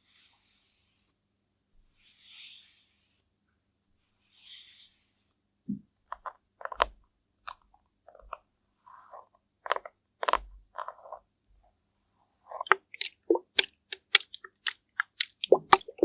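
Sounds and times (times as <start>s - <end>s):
soft airy hisses: 1.9s - 3.3s, 4.0s - 5.4s.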